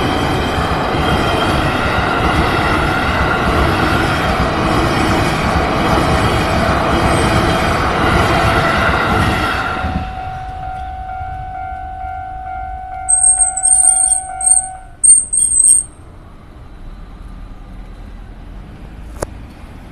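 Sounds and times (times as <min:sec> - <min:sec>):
train running noise: 0:00.0 - 0:19.0
high-pitched squeals: 0:13.1 - 0:16.0
road traffic: 0:13.1 - 0:19.9.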